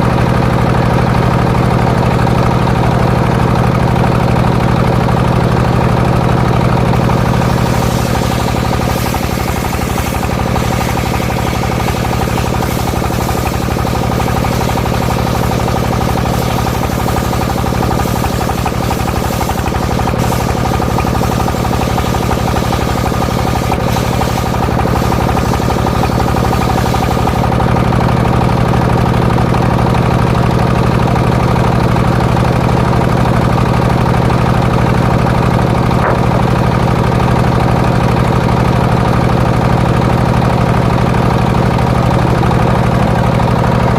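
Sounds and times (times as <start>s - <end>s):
saw engine running: 0.0s - 43.9s
high hissing: 7.0s - 27.5s.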